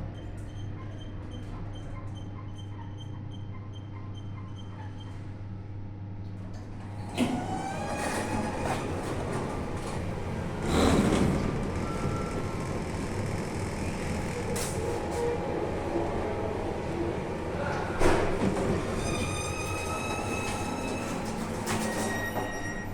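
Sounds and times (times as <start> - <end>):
elevator low hum: 6.5 - 22.9
squealing and rattling: 7.0 - 11.4, 18.4 - 22.9
elevator clunk: 7.0 - 12.3, 18.0 - 22.9.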